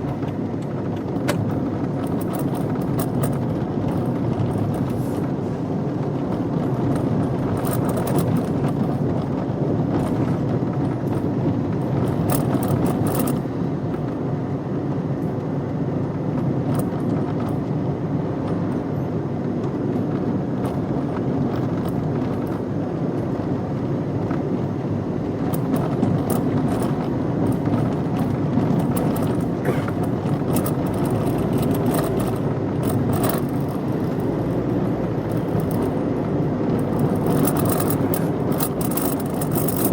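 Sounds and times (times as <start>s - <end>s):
car engine and road noise: 0.0s - 39.9s
light clicks and rattles: 6.0s - 9.4s, 10.0s - 14.2s, 25.4s - 39.9s.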